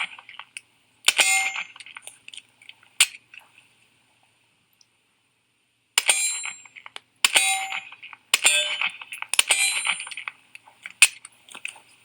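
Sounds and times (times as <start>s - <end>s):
sharp metallic clank: 1.1s - 1.8s, 6.0s - 10.3s.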